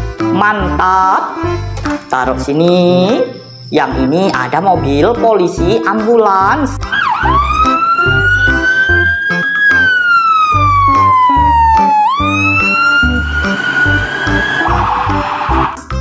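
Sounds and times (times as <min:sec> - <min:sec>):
background music with steady beat: 0:00.0 - 0:16.0
wailing emergency siren: 0:06.8 - 0:15.8.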